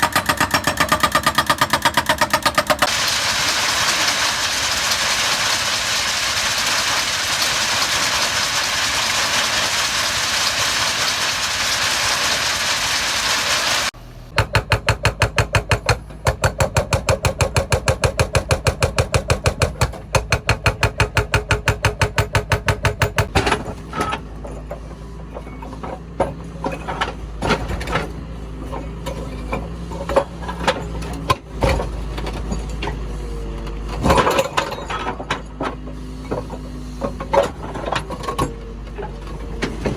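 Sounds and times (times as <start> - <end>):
heavy machinery engine running: 0.0 - 14.3.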